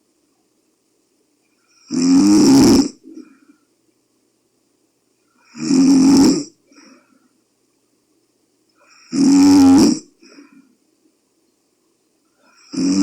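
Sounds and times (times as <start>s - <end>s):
person snoring loudly: 1.8s - 3.3s, 5.4s - 6.6s, 8.9s - 10.4s, 12.5s - 13.0s.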